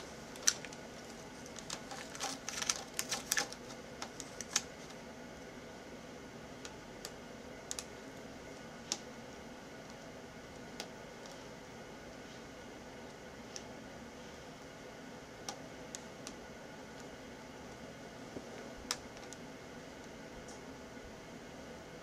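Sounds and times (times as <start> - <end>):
plastic laptop parts handled: 0.3 - 4.7.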